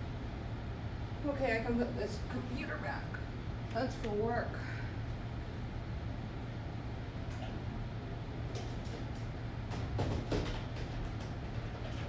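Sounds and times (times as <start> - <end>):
low electrical hum: 0.0 - 12.0
objects knocking on a desk: 9.7 - 11.0.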